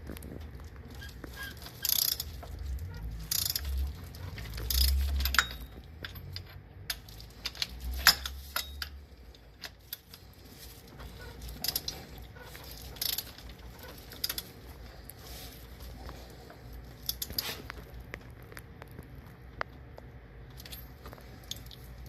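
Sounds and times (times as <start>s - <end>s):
metal tools clinking and rattling: 0.9s - 14.7s, 20.5s - 21.8s.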